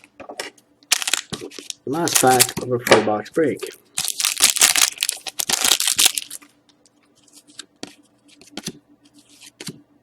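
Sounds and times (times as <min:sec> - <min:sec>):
wrapper being torn open: 0:00.9 - 0:02.6, 0:04.0 - 0:06.4
cards clicking and rustling: 0:00.9 - 0:02.7, 0:04.0 - 0:06.5.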